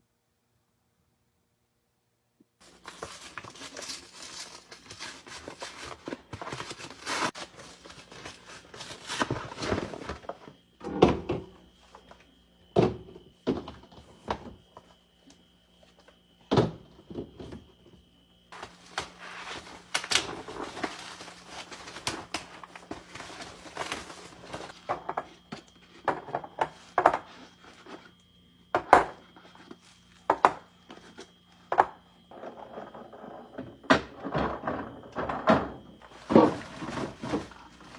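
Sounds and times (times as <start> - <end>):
packaging rustling: 2.6 - 10.3, 18.6 - 24.8
items thunking on shelves: 2.9 - 12.1, 12.7 - 14.8, 16.4 - 18.0, 33.6 - 37.9.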